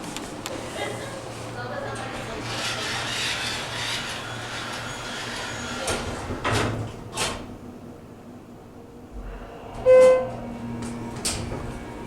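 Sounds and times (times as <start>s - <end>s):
elevator humming: 7.6s - 12.0s
elevator clunks: 9.2s - 12.0s.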